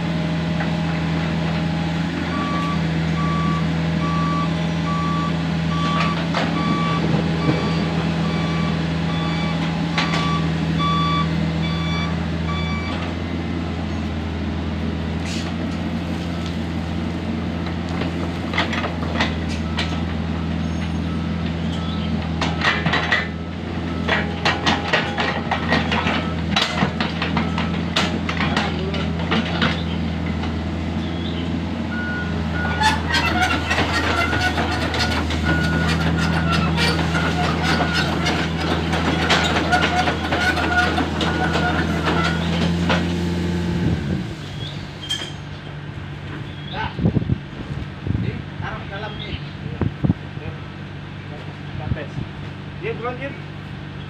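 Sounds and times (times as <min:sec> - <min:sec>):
excavator diesel engine running: 0:00.0 - 0:54.0
alarm beeping: 0:02.3 - 0:13.0
sharp metal clanks and knocks: 0:22.4 - 0:23.4, 0:24.0 - 0:29.8, 0:32.8 - 0:43.2.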